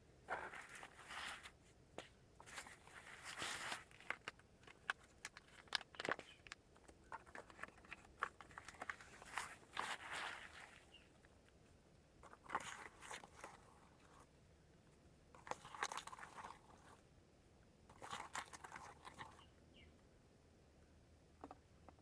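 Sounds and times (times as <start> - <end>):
rustling and crackling: 0.2 - 14.2.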